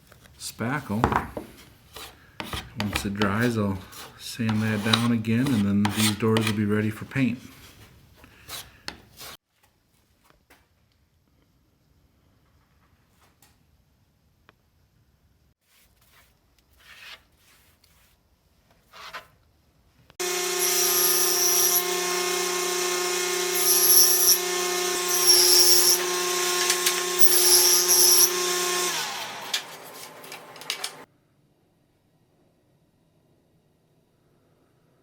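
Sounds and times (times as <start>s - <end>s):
electric sander running: 20.2s - 31.1s.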